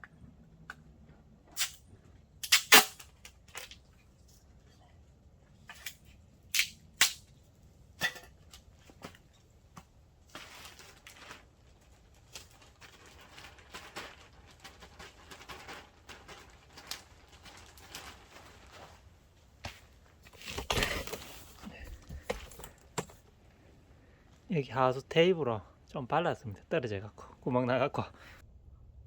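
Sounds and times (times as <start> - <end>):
plastic film crinkling and rustling: 8.5 - 23.4.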